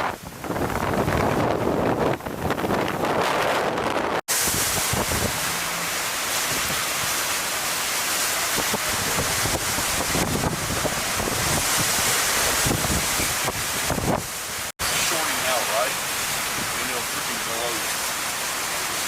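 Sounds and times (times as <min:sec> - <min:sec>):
storm wind buffeting microphone: 0:00.0 - 0:16.9.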